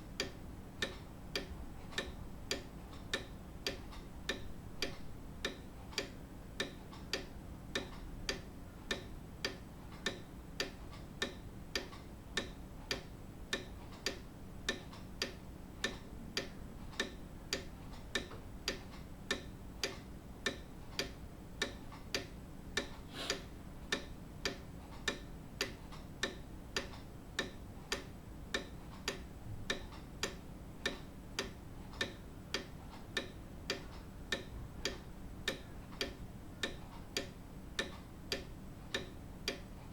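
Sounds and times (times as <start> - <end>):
clock ticking: 0.2 - 39.9.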